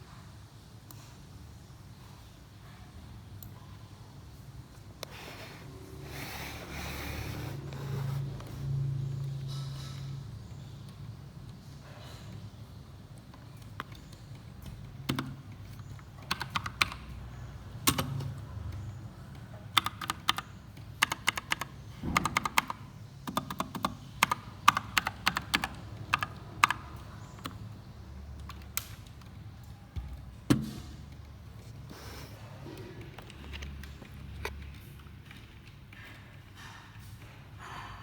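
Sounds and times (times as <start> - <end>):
mechanical keyboard typing: 13.1 - 31.6, 33.0 - 36.6.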